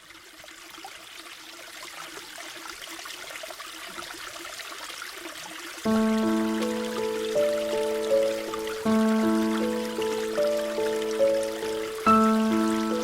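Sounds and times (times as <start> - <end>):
mountain stream babbling: 5.4 - 13.0.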